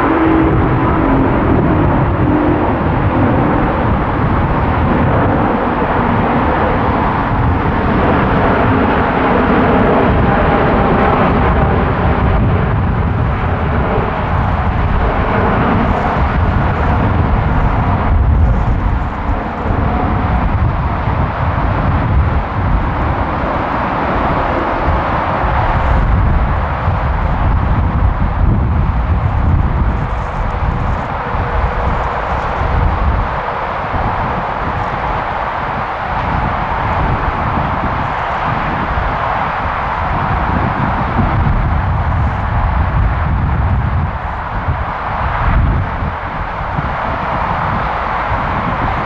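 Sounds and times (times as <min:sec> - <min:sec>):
jet engines at takeoff thrust: 0:00.0 - 0:49.0.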